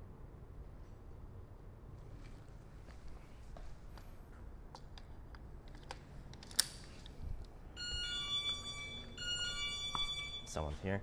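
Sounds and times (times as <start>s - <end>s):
electronic door chime: 7.8s - 10.8s.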